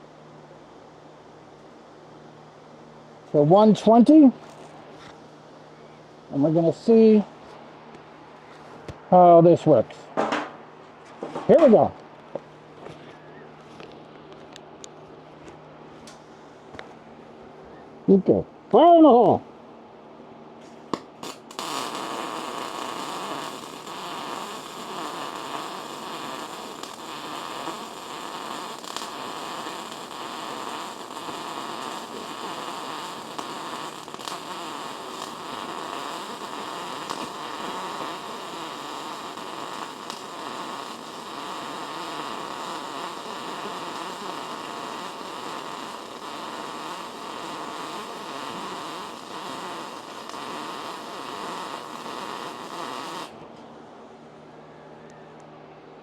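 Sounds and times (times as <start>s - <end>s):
welding arc crackling: 20.9s - 53.4s.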